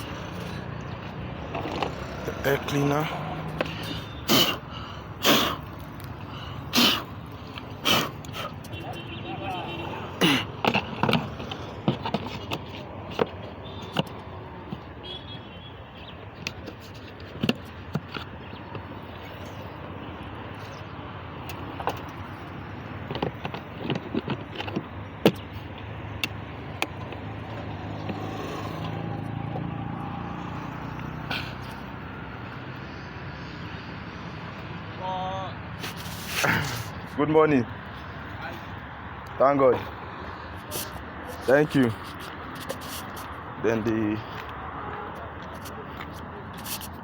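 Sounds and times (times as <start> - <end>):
vehicle engine rumble: 0.0 - 47.0
parts clicking and knocking: 10.4 - 14.8, 21.4 - 29.6.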